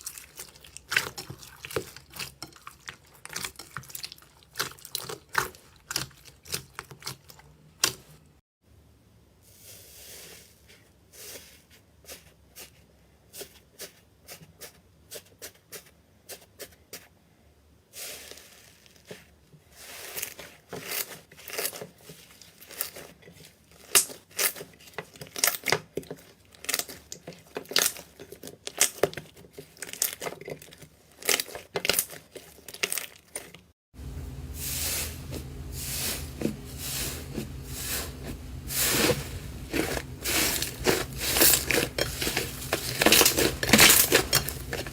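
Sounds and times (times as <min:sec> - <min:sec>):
steady low hum: 0:34.0 - 0:44.9.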